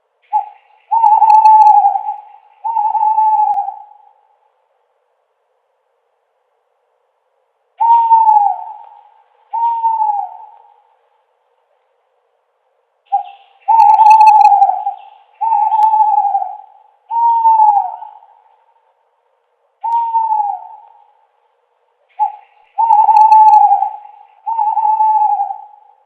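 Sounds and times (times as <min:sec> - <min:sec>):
owl hooting: 0:00.0 - 0:04.4, 0:07.8 - 0:11.1, 0:13.1 - 0:19.0, 0:19.8 - 0:26.0.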